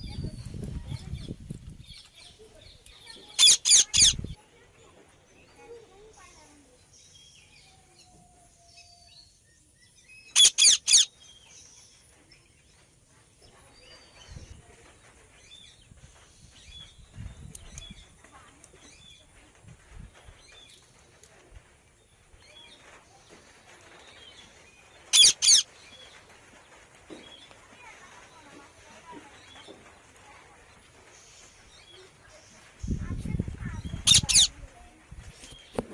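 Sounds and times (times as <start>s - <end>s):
parakeet shrieking: 3.4s - 4.3s, 10.4s - 11.1s, 25.1s - 25.6s, 34.0s - 34.5s
parakeet chirping: 3.4s - 4.4s, 10.3s - 11.1s, 25.1s - 25.7s, 33.8s - 34.5s.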